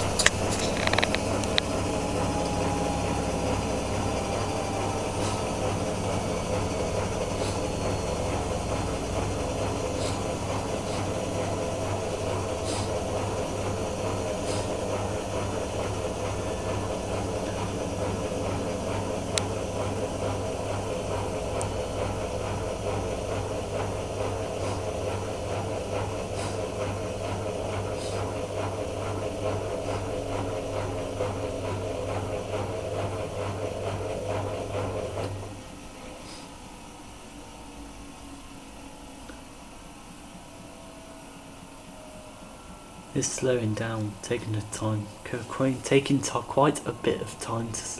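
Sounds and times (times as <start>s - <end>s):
washing machine drum hum: 0.0s - 35.8s.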